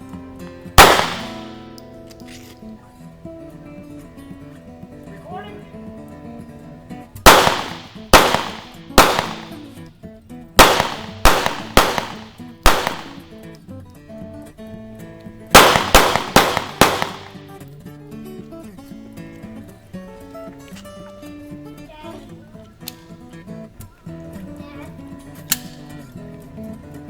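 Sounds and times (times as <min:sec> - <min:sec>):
pistol shots: 0:00.7 - 0:01.8, 0:07.2 - 0:09.9, 0:10.6 - 0:13.5, 0:15.5 - 0:17.6.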